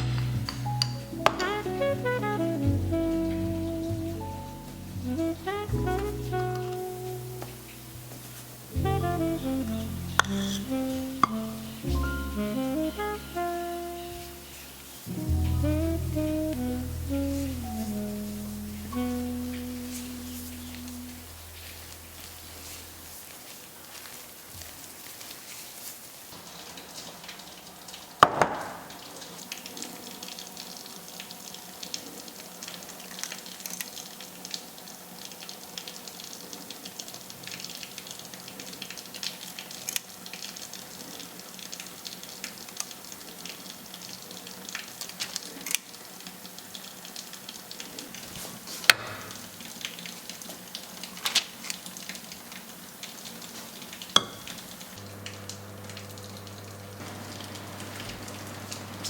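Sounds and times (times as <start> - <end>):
soft crackling hiss: 0.0 - 27.9.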